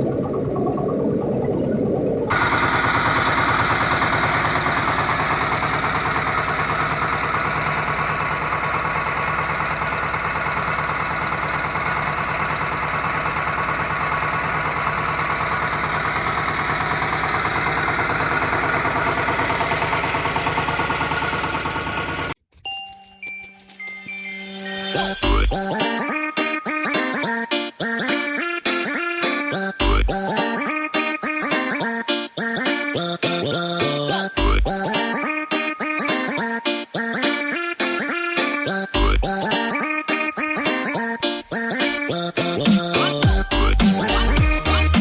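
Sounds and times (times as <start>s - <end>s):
engine and drivetrain rattling: 2.3s - 22.4s.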